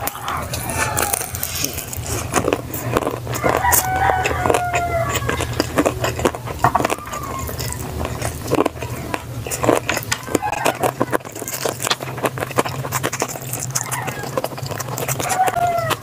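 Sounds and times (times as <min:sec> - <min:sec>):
rooster crowing: 0:00.0 - 0:01.4, 0:03.3 - 0:05.7, 0:15.2 - 0:16.0
chewing: 0:00.0 - 0:16.0
steady low hum: 0:00.0 - 0:16.0.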